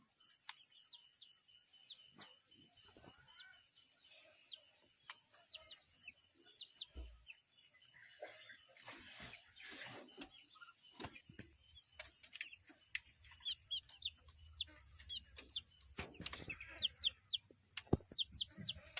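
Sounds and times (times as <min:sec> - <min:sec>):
ducklings peeping: 0:00.1 - 0:18.9.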